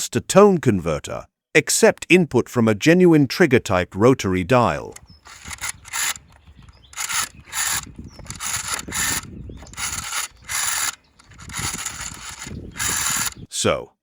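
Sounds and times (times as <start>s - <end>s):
rotary telephone dial whirring: 4.9s - 13.4s.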